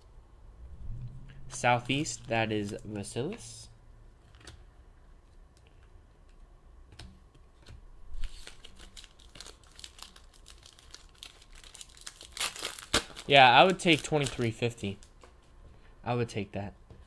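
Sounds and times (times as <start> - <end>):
wrapper crinkling and tearing: 1.5 - 3.4, 8.2 - 15.1.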